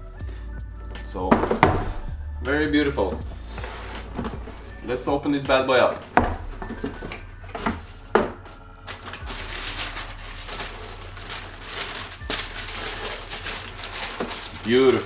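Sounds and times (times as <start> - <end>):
paper crinkling and rustling: 3.0 - 5.1, 5.7 - 15.0.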